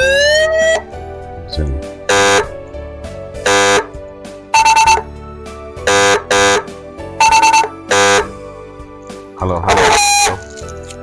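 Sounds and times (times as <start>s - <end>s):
electronic siren horn honks: 2.1s - 2.6s, 3.4s - 5.1s, 5.8s - 8.4s, 9.7s - 10.4s.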